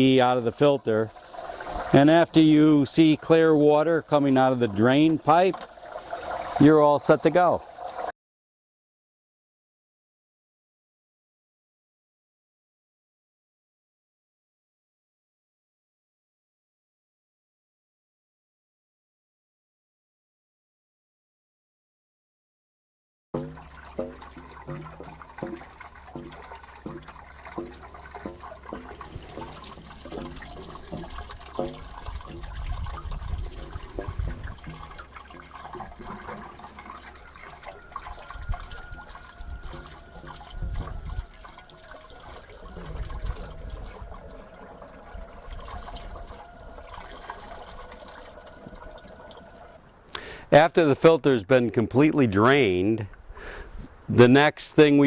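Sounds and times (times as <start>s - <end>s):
water running and splashing: 0.0s - 8.1s, 23.4s - 50.2s
light regular tapping: 23.4s - 38.1s.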